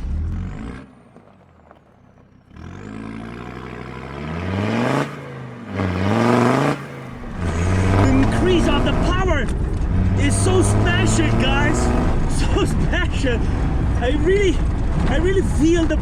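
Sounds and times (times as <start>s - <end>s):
diesel engine accelerating hard: 0.0s - 16.0s.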